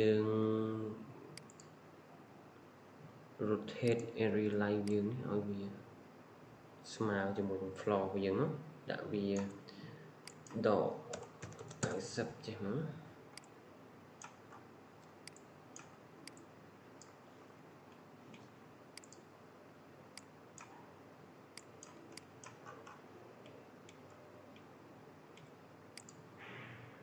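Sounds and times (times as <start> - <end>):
mouse and keyboard clicks: 14.2 - 17.2.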